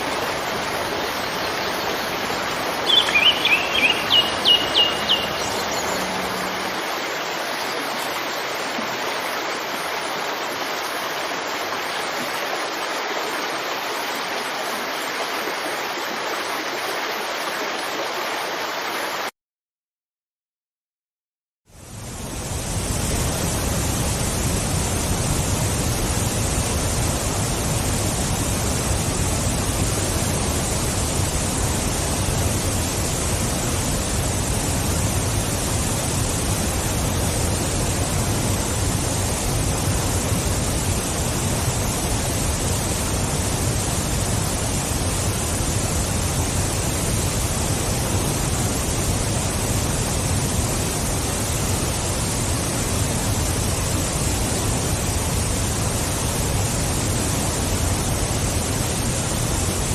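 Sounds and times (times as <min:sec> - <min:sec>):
waterfall rushing: 0:00.0 - 0:19.3, 0:22.0 - 0:59.9.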